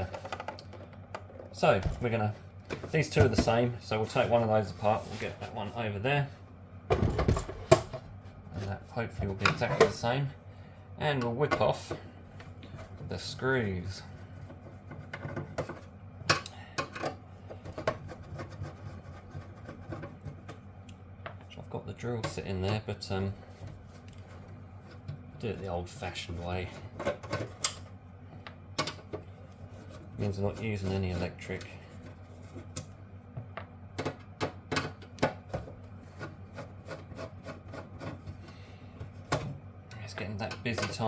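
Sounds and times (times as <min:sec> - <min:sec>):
rubbing on metal: 0:17.6 - 0:20.4.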